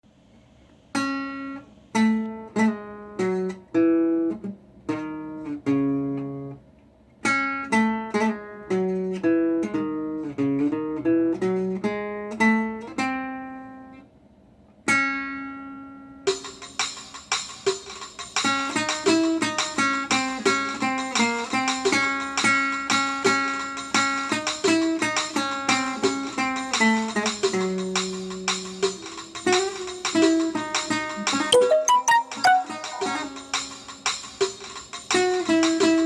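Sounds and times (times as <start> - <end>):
plucked string instrument melody: 31.6 - 33.2.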